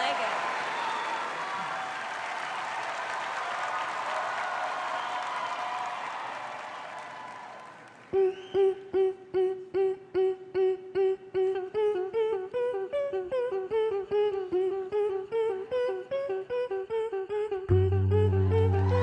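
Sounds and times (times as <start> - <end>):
beatboxer staccato vocal hum: 8.2 - 19.0
deep vocal bass: 17.2 - 19.0.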